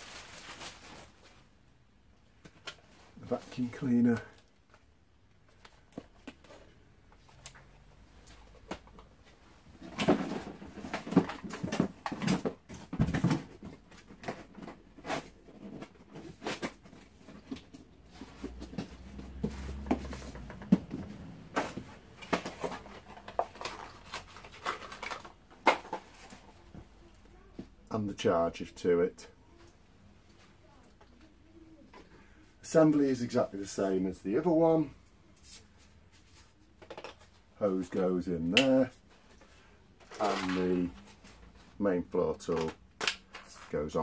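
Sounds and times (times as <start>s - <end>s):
packaging rustling: 0.0s - 1.4s, 18.4s - 26.4s, 40.0s - 41.5s
plastic parts knocking and clicking: 9.8s - 26.9s, 36.8s - 37.3s, 42.4s - 43.7s.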